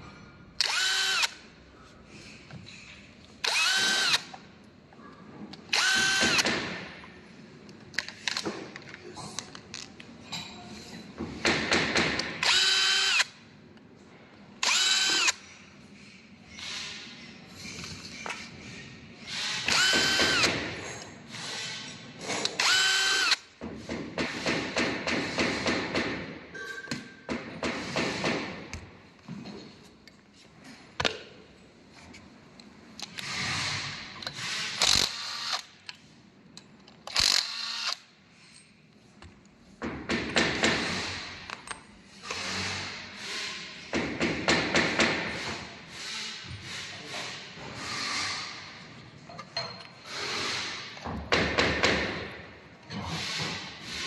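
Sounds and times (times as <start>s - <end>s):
power drill whining: 0.6s - 1.3s, 5.7s - 6.4s, 14.6s - 15.4s, 19.3s - 20.5s, 22.6s - 23.4s.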